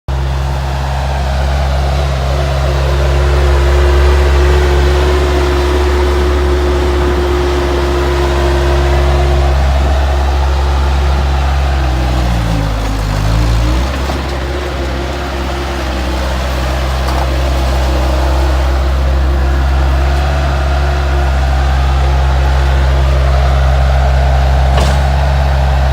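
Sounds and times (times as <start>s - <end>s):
diesel engine running: 0.1s - 25.9s.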